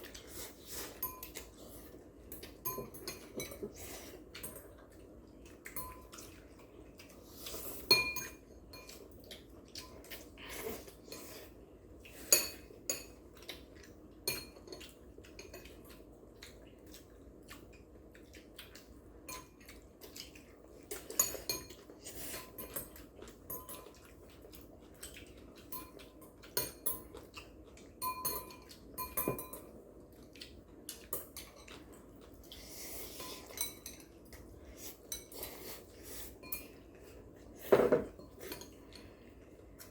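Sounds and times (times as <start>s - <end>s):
cutlery clinking on plates: 2.3s - 4.7s, 7.9s - 9.0s, 28.0s - 29.7s, 36.4s - 36.8s, 37.6s - 39.1s.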